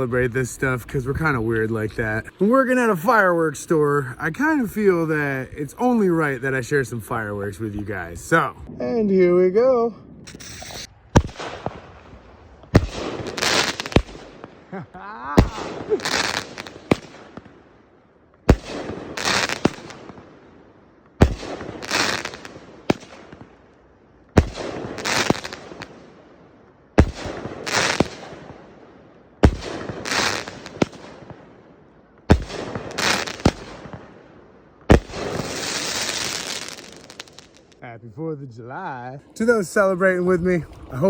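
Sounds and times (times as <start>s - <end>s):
fireworks bangs and crackling: 10.2s - 23.6s, 24.3s - 26.3s, 26.9s - 37.8s.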